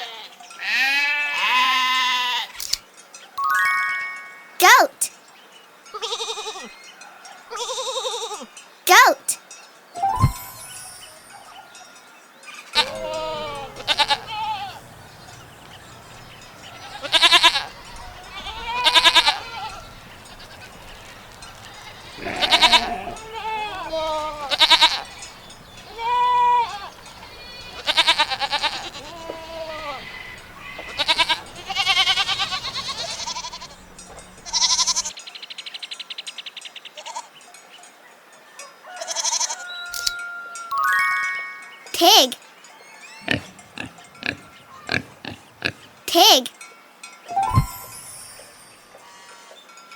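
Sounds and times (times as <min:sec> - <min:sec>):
goats bleating: 0:00.0 - 0:02.5, 0:12.8 - 0:35.1.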